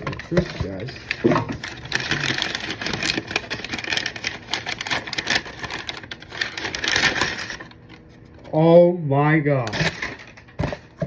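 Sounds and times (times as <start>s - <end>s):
packaging rustling and crinkling: 0.0s - 8.5s.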